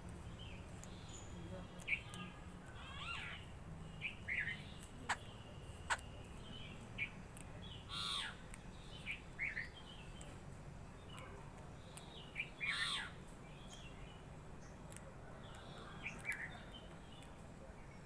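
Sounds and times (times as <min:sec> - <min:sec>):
bird chirps: 0:00.3 - 0:10.4.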